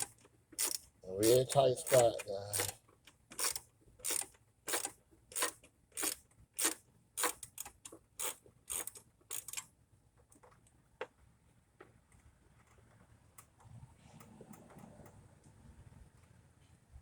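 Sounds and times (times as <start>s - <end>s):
ratchet wrench clicking: 0.0s - 9.7s.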